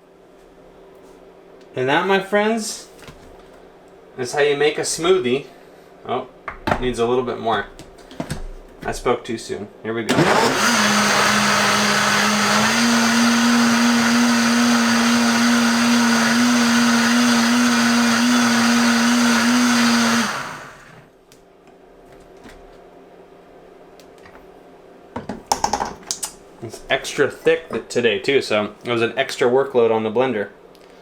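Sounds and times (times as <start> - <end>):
blender motor running: 10.1 - 21.0.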